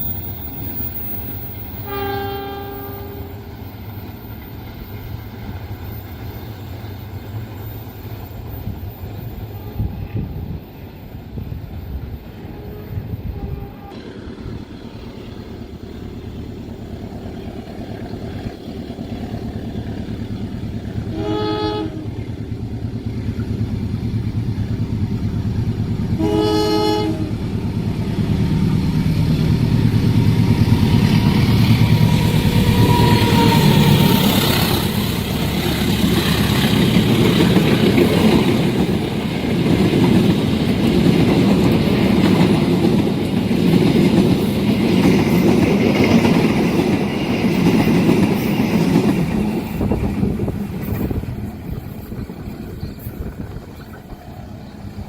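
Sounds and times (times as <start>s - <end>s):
train horn blasts: 1.8s - 3.5s, 9.4s - 10.5s, 12.3s - 14.2s, 21.0s - 22.4s, 26.1s - 27.5s, 30.8s - 34.9s
train wheels clattering over rails: 14.0s - 55.0s.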